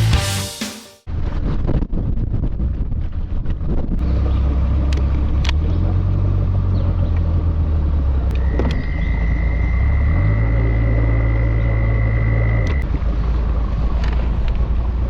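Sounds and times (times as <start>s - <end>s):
wind buffeting microphone: 1.1s - 7.5s
boat engine droning: 4.0s - 15.0s.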